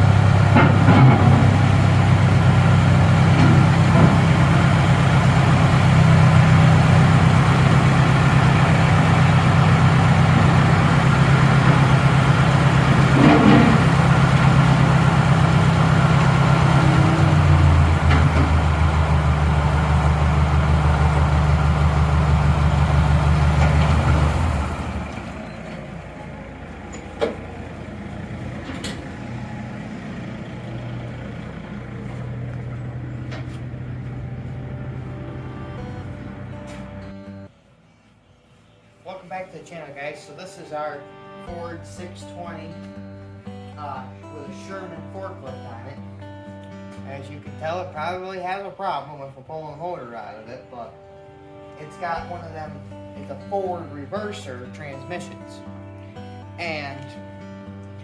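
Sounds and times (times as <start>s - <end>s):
engine running: 0.0s - 37.5s.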